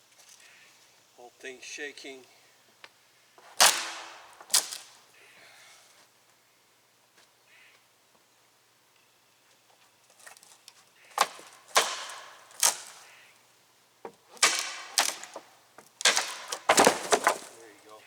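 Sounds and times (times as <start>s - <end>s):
wood cracking: 3.4s - 5.0s, 10.2s - 13.4s, 14.0s - 18.0s
wooden knocks: 14.0s - 17.7s.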